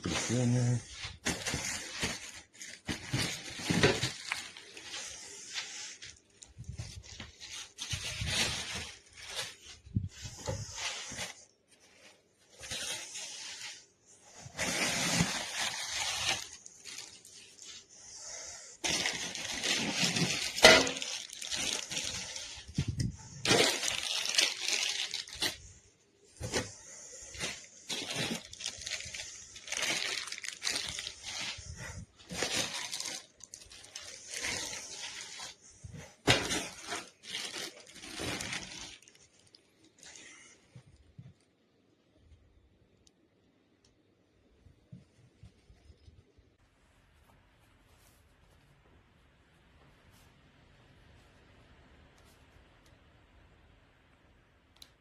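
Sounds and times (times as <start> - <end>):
rustling and crackling handling: 0.0 - 41.5.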